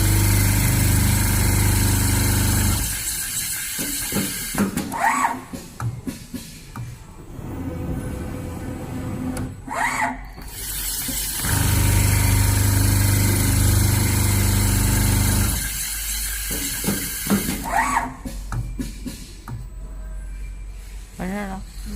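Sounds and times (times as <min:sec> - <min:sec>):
sewing machine stitching: 0:07.6 - 0:18.1.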